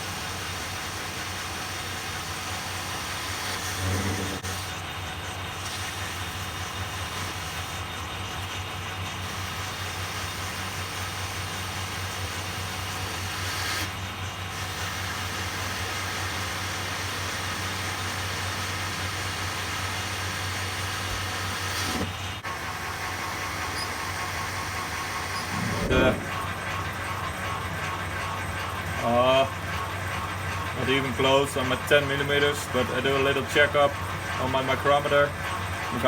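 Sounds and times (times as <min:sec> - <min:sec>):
metal lathe running: 0:00.0 - 0:36.0
steady hum: 0:25.4 - 0:28.6.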